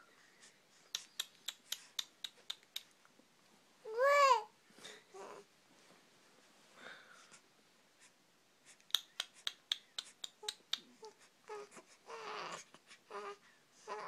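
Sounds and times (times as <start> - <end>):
infant babbling: 3.9 - 4.5, 11.0 - 14.0.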